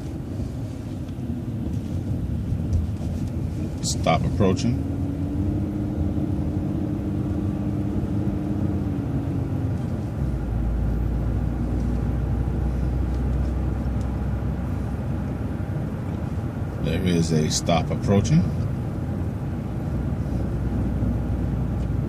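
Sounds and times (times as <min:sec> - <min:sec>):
deep low rumble: 0:00.0 - 0:16.8
bus engine and road noise: 0:00.0 - 0:22.0.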